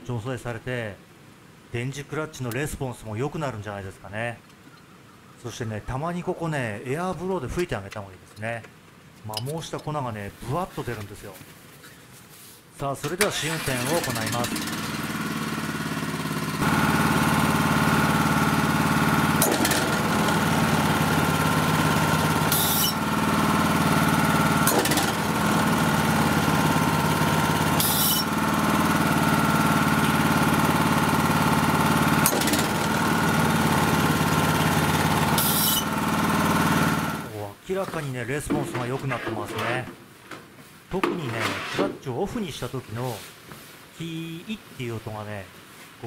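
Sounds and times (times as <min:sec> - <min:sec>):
snowblower engine running: 0:13.3 - 0:37.4.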